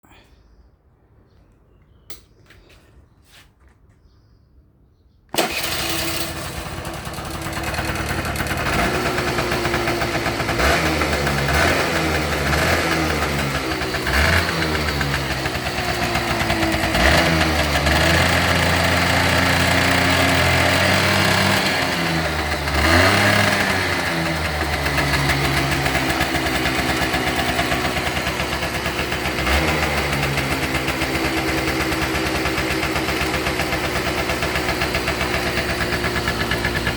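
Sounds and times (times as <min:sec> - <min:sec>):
scooter engine starting and revving: 0:05.3 - 0:36.9.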